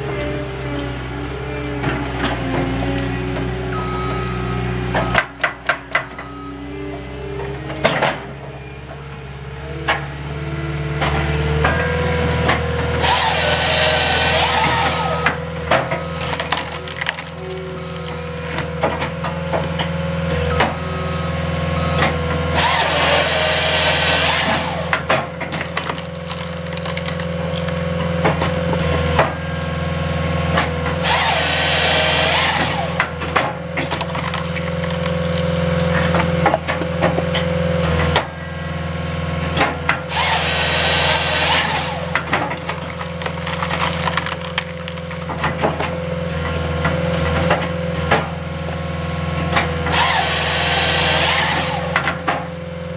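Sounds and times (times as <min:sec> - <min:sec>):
engine and hydraulics running: 0:00.0 - 0:52.9
saw cutting through log: 0:12.8 - 0:15.6, 0:16.2 - 0:18.7, 0:22.5 - 0:27.9, 0:30.9 - 0:36.3, 0:40.0 - 0:45.4, 0:49.8 - 0:52.5
wood knocks and cracks: 0:15.2 - 0:19.9, 0:24.9 - 0:29.3, 0:33.0 - 0:37.2, 0:42.1 - 0:46.0.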